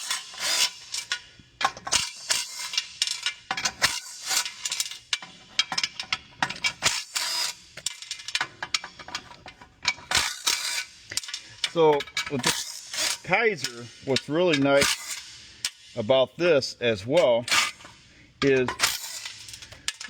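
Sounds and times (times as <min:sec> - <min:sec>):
ratchet clicking: 0:00.0 - 0:15.9, 0:17.4 - 0:20.0
metal clicks: 0:17.1 - 0:20.0.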